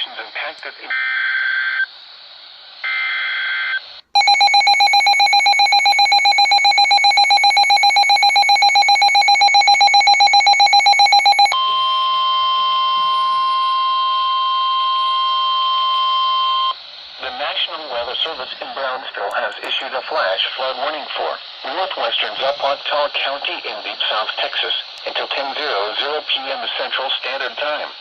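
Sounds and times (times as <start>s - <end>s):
rapidly pulsing alarm beep: 4.2s - 16.8s
steady warning alarm tone: 4.2s - 16.8s.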